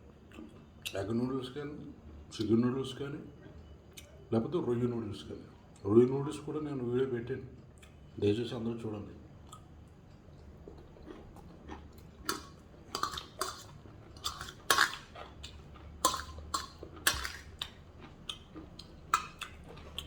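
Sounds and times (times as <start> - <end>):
chewing: 9.5 - 20.0.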